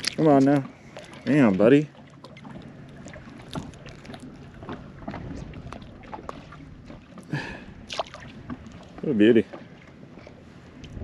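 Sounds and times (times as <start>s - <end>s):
water washing around boat: 0.0s - 11.0s
wind on microphone: 3.1s - 8.7s, 10.7s - 11.0s.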